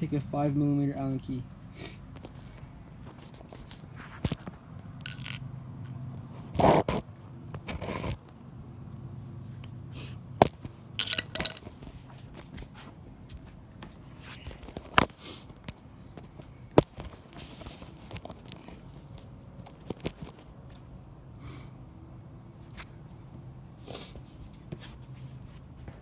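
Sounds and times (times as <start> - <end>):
clicks and knocks of handled parts: 2.2 - 5.5, 10.4 - 12.5.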